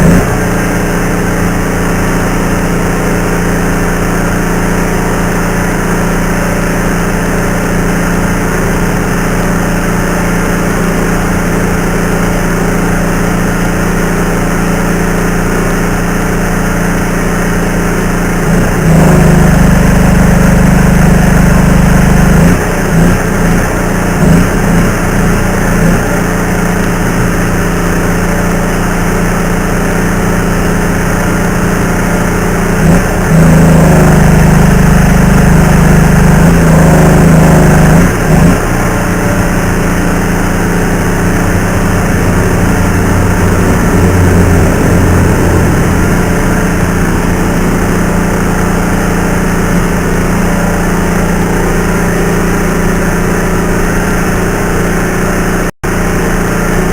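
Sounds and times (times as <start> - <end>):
motor drone with low hum: 0.0 - 56.9.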